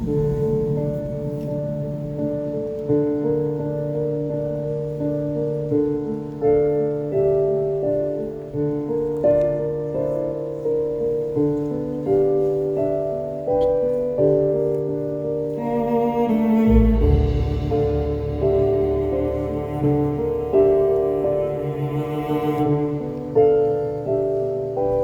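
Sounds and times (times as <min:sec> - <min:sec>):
slow piano notes: 0:00.0 - 0:25.0
deep bass: 0:15.6 - 0:23.0.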